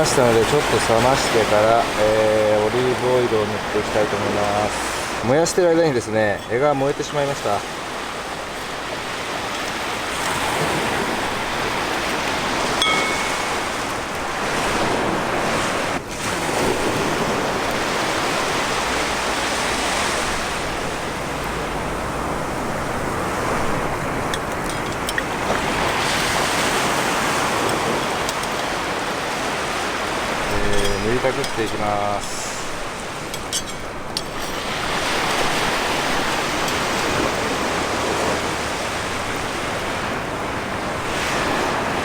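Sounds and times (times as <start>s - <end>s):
ocean surf washing ashore: 0.0s - 42.0s
brief high tone: 12.8s - 13.8s.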